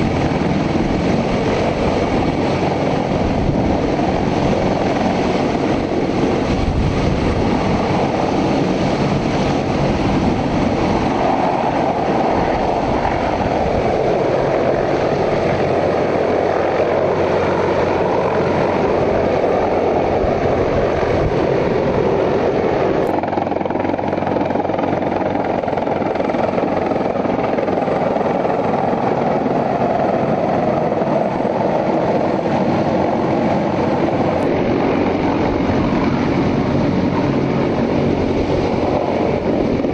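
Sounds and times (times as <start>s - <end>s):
helicopter rotor and engine noise: 0.0s - 39.9s.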